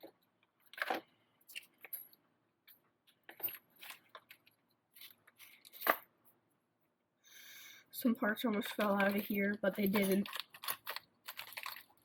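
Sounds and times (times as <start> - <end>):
plastic bags crinkling: 8.4 - 12.0
small parts clicking: 8.5 - 12.0.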